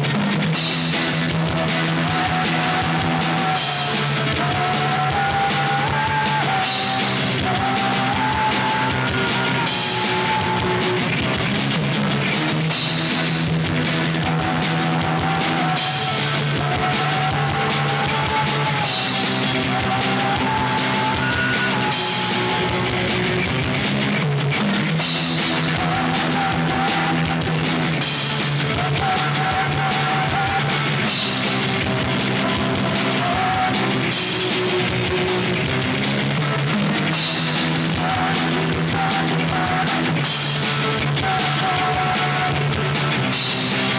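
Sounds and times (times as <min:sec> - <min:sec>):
rock band playing: 0:00.0 - 0:43.9.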